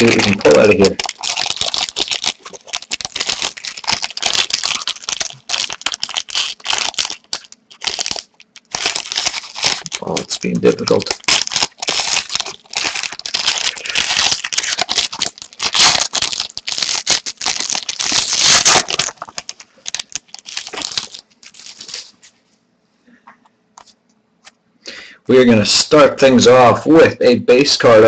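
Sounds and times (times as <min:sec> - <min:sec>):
wrapper crinkling and tearing: 0:00.0 - 0:22.3.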